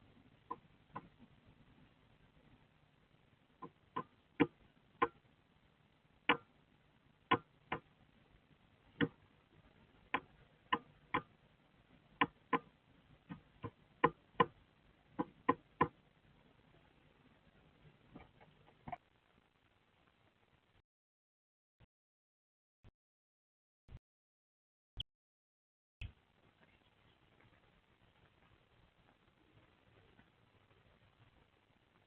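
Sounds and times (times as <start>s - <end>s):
bird beak tapping egg: 3.6s - 5.2s, 6.3s - 6.5s, 7.3s - 7.9s, 10.1s - 11.3s, 12.2s - 12.7s, 13.3s - 16.0s.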